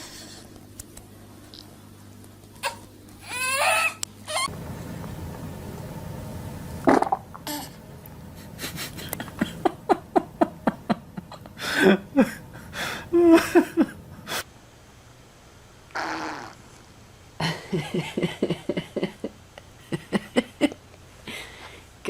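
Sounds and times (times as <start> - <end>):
baby farting: 6.8 - 7.7, 15.9 - 16.6
laughter: 8.5 - 12.5, 13.2 - 14.0, 17.4 - 20.9.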